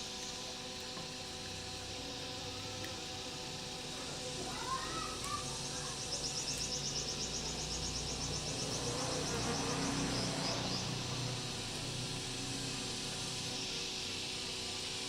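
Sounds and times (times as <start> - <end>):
steady low hum: 0.0 - 15.0
insect trilling: 4.6 - 11.6.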